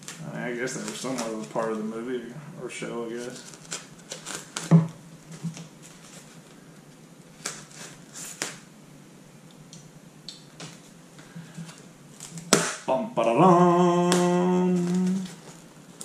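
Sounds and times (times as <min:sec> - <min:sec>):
sharp knock: 0:12.5 - 0:12.9.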